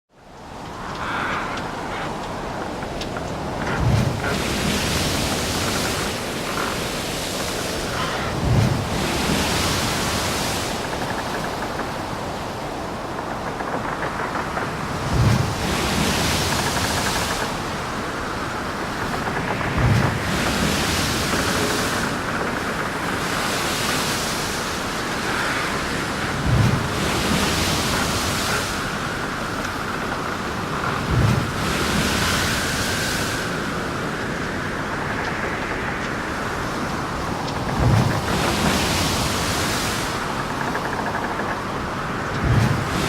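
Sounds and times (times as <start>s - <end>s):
wind and water rushing: 0.1s - 43.0s
waves striking ship hull: 0.4s - 43.0s.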